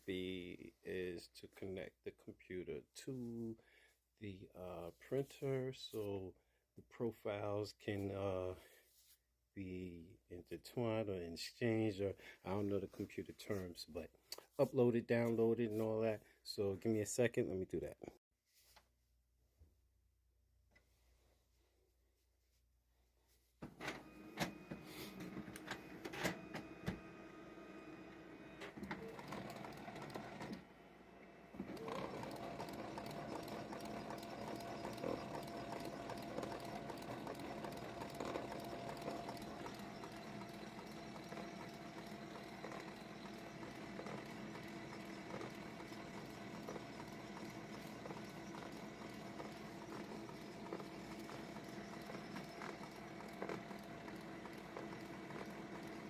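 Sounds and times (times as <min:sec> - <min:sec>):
laser printer mechanism clicking: 0:31.7 - 0:56.0.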